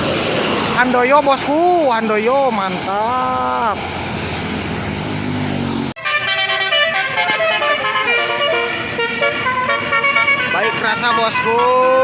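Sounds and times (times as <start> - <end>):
bus passing: 0.0 - 12.0
musical bus horn tune: 6.0 - 12.0.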